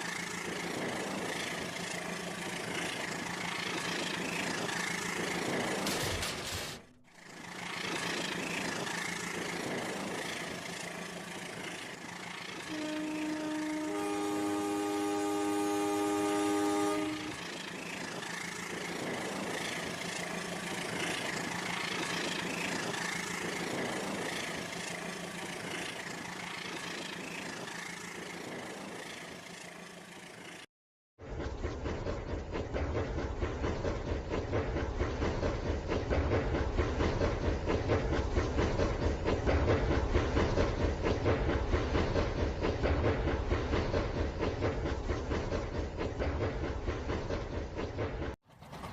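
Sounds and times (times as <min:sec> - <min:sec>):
train horn effect from speaker: 0:12.7 - 0:17.4.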